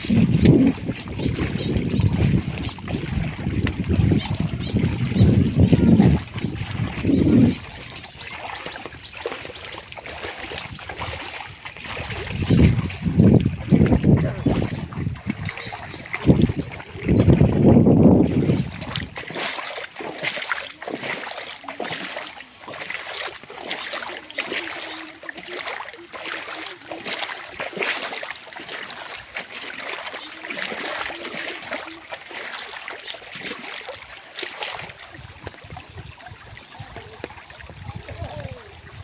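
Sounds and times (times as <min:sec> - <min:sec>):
wind buffeting microphone: 0:00.0 - 0:21.4, 0:34.7 - 0:39.0
floodwater flowing and splashing: 0:00.0 - 0:39.0.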